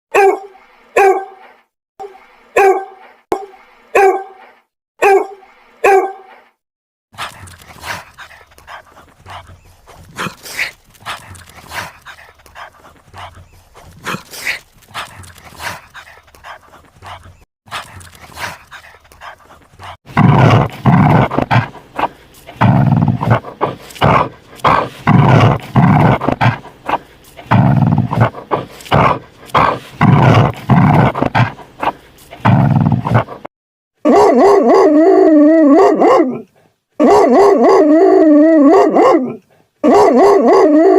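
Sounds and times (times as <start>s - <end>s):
dog barking: 0.1s - 6.4s, 34.0s - 35.0s, 35.7s - 37.9s, 38.6s - 40.8s.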